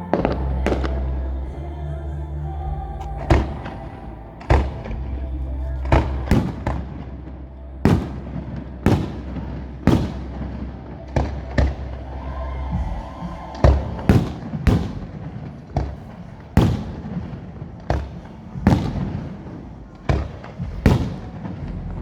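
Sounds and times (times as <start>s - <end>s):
fireworks bangs echoing: 5.8s - 21.8s.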